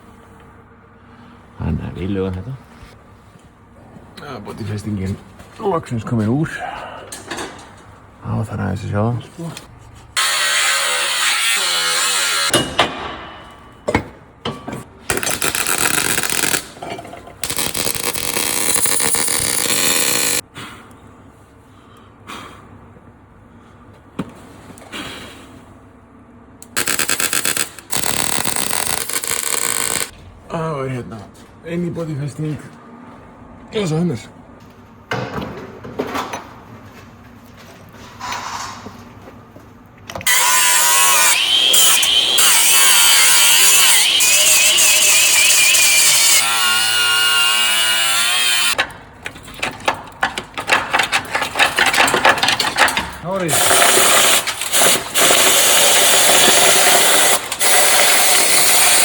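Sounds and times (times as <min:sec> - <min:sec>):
power tool crackling on metal: 0:15.1 - 0:16.8, 0:17.4 - 0:20.4, 0:26.7 - 0:30.1, 0:40.2 - 0:48.8, 0:53.5 - 0:59.0
hand tools clicking and knocking: 0:48.8 - 0:55.7.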